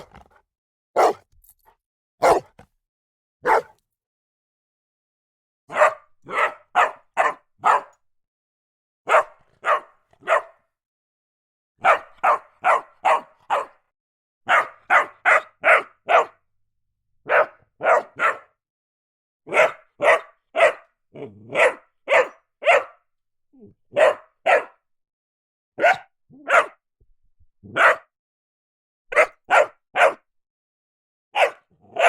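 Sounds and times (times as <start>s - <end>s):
dog barking: 0.0s - 0.4s, 1.0s - 1.3s, 2.2s - 2.6s, 3.4s - 3.8s, 5.7s - 8.0s, 9.1s - 10.7s, 11.8s - 13.9s, 14.5s - 16.4s, 17.2s - 18.6s, 19.5s - 23.0s, 23.9s - 24.8s, 25.8s - 26.8s, 27.7s - 28.1s, 29.1s - 30.3s, 31.4s - 32.0s.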